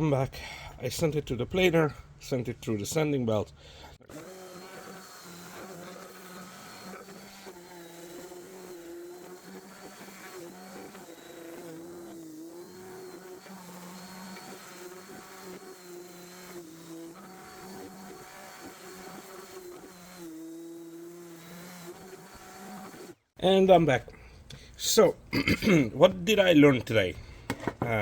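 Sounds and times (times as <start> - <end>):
electric motor humming: 4.0 - 23.3.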